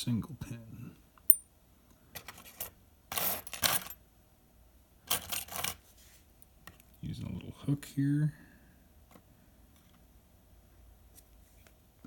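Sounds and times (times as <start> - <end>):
lock picks clinking and scraping: 2.2 - 4.0, 5.0 - 5.8.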